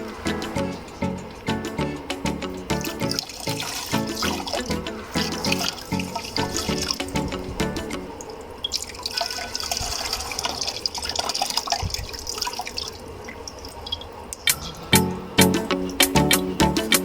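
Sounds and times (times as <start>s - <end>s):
water pouring and trickling: 3.0s - 7.0s, 8.2s - 14.7s
water drips and splashes: 8.6s - 14.5s.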